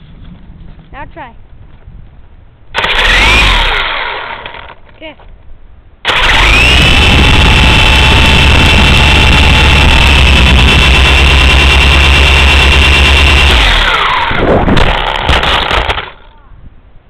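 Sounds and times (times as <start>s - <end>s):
toy helicopter rotors whining: 2.8s - 4.8s, 6.0s - 16.4s.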